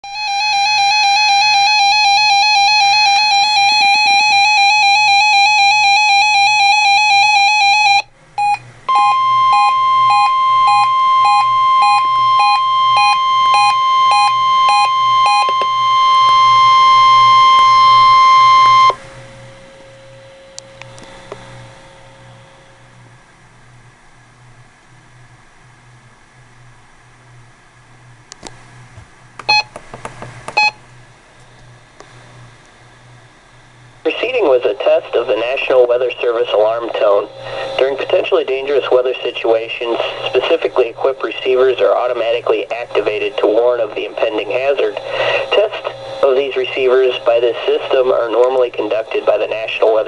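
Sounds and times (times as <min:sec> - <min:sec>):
warbling two-pitch alarm tone: 0:00.0 - 0:19.0
steady alarm tone: 0:00.0 - 0:20.5, 0:36.6 - 0:39.3, 0:39.9 - 0:49.9
electronic beeps: 0:07.5 - 0:19.0.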